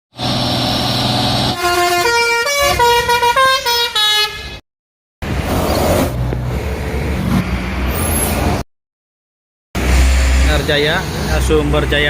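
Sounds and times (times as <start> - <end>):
bus melody horn: 1.5 - 4.6.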